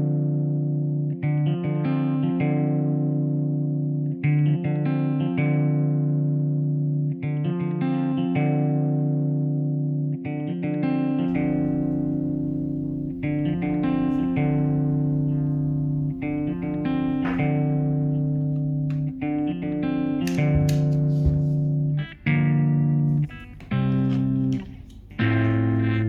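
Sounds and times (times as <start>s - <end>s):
ringing chords: 11.3s - 20.7s
low bass layer: 11.3s - 20.9s.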